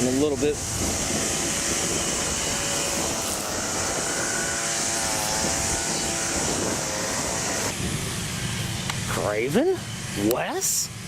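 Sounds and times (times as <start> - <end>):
steady mechanical drone: 0.0 - 11.0
strong high hiss: 0.0 - 11.0.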